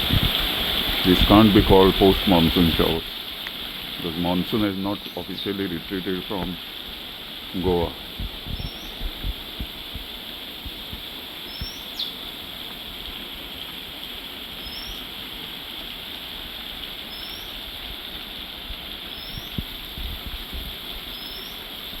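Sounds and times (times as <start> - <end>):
dull low thumps: 0.0 - 2.3, 7.9 - 11.1, 19.4 - 20.8
heavy rain hissing: 0.0 - 22.0
bird chirping: 8.5 - 9.1, 11.5 - 12.2.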